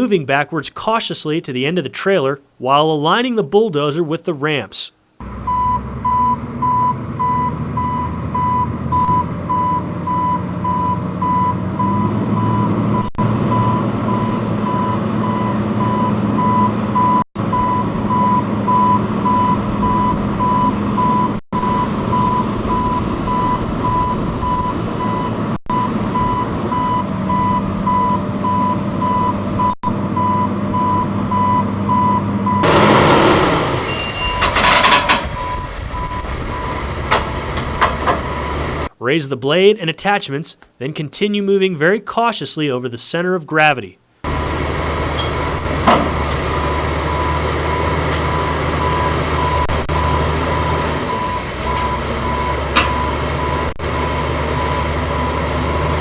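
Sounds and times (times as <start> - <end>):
bulldozer diesel engine running: 5.2 - 38.9, 44.2 - 56.0
backup alarm beeping: 5.4 - 32.8, 33.6 - 38.8, 45.2 - 45.9, 46.5 - 55.7
loud burst of noise: 32.6 - 38.9.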